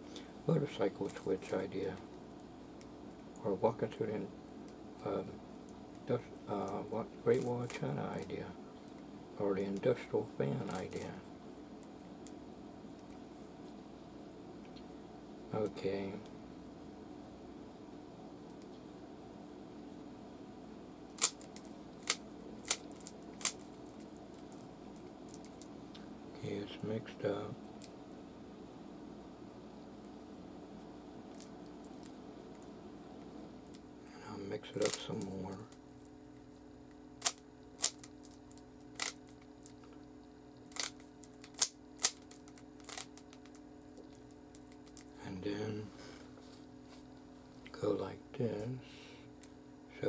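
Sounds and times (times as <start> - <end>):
faint steady hum: 0.0 - 50.0
plastic puzzle cube clicks: 21.2 - 23.6, 40.7 - 43.6.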